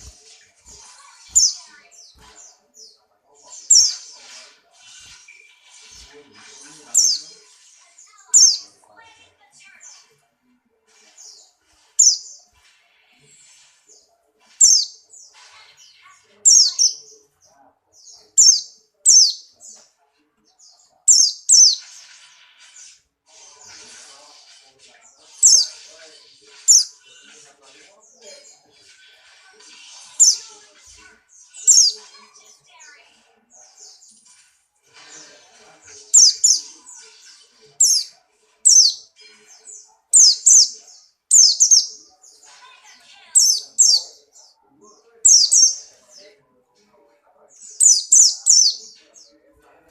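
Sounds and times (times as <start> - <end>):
faint bird twittering: 0.0 - 8.8, 11.0 - 12.4, 13.1 - 17.3, 18.0 - 19.8, 20.6 - 22.0, 25.1 - 27.2, 29.9 - 30.6, 31.4 - 32.0, 35.8 - 42.0, 43.3 - 44.6, 45.3 - 46.3, 47.5 - 49.4.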